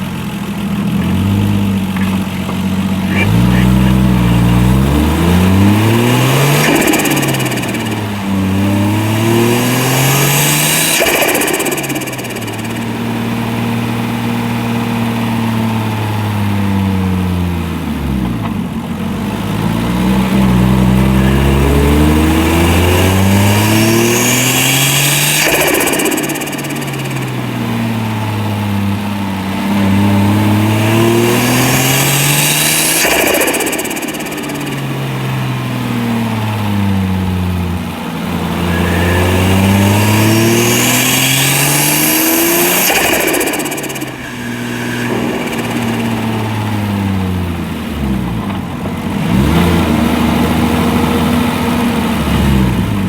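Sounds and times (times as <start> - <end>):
turbocharged engine revving: 0.0 - 53.0
turbo fluttering chatter: 2.0 - 4.7, 5.4 - 14.5, 21.0 - 28.5, 31.5 - 36.7, 38.0 - 47.8.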